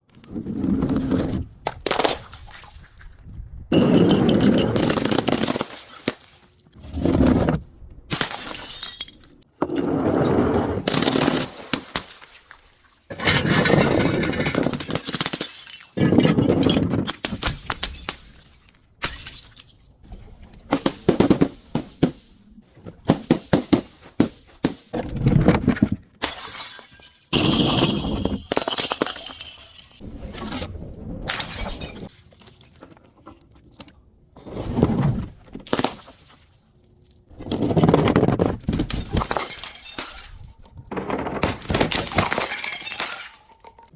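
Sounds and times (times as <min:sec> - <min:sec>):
glass bottles shattering: 0:08.1 - 0:09.4, 0:13.2 - 0:19.9, 0:26.2 - 0:30.0, 0:31.3 - 0:32.1, 0:38.8 - 0:43.9
glass pieces crunching: 0:26.3 - 0:30.0, 0:38.9 - 0:43.9.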